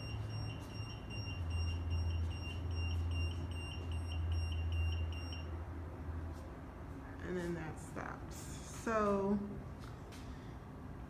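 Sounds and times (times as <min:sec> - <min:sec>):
garage door opener beeping: 0:00.0 - 0:05.6.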